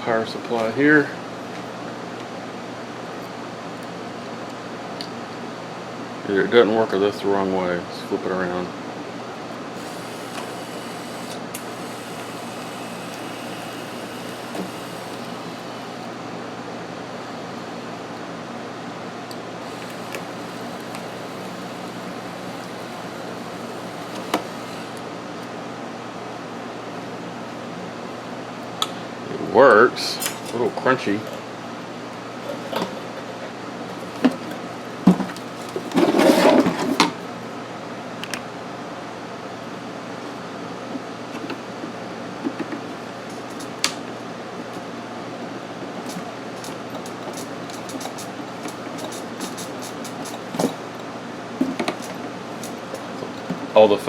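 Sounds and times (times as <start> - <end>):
electric actuator running: 9.7 - 16.2, 19.6 - 25.1, 46.0 - 50.8.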